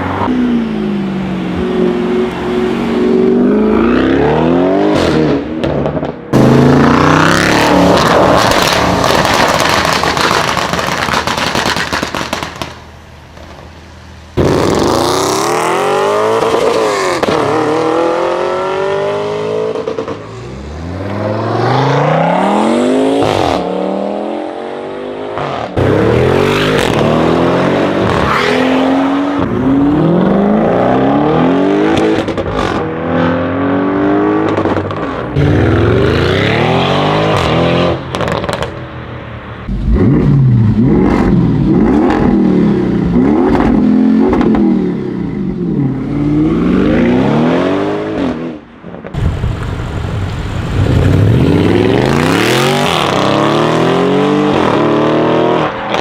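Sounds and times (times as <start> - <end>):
exhaust crackles: 7.8 - 13.7, 49.2 - 52.7
car engine revving: 14.4 - 38.8, 39.7 - 48.4, 49.2 - 56.0.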